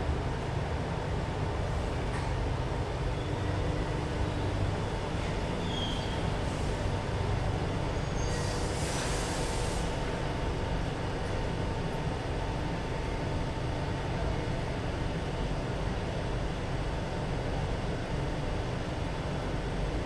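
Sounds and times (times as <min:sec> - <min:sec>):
metro train rumbling: 0:00.0 - 0:20.0
brief hiss: 0:08.3 - 0:09.9.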